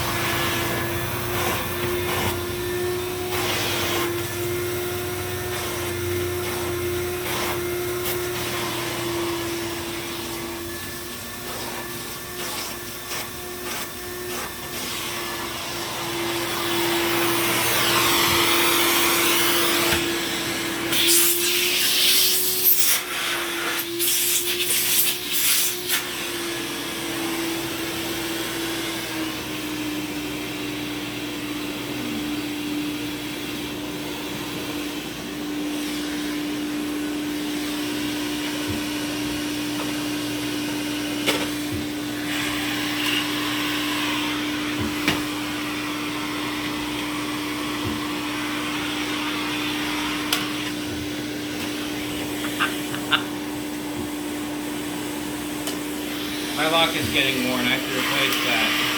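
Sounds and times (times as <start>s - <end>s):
vacuum cleaner motor whine: 0.0s - 58.9s.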